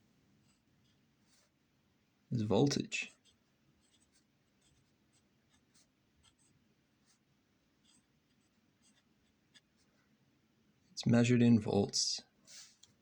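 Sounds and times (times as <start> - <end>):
pen scratching while writing: 3.1 - 7.2, 7.8 - 9.9.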